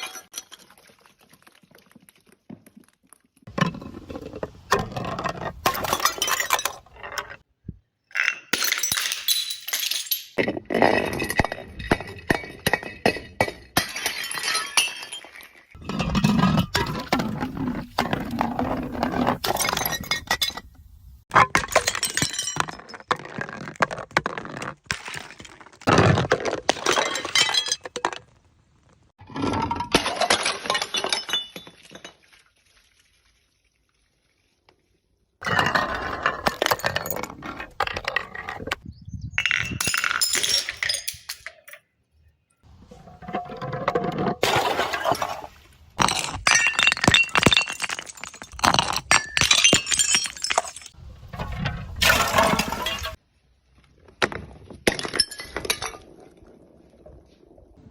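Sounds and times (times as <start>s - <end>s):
glass bottles breaking and crunching: 0.0s - 1.0s, 3.5s - 7.4s, 8.1s - 28.4s, 29.3s - 32.6s, 35.4s - 38.4s, 39.4s - 41.8s, 44.2s - 51.0s, 52.0s - 53.2s, 54.2s - 56.2s
glass shards clinking: 8.4s - 10.4s, 39.4s - 41.8s, 46.0s - 51.0s.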